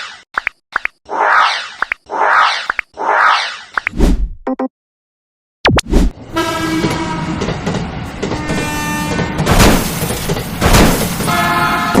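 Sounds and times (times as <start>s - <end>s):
electronic horn and engine tones: 6.3s - 7.5s.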